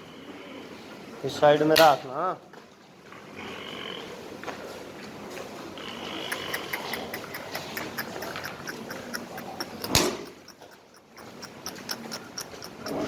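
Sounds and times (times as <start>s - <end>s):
rapid even ticking: 6.1s - 13.0s.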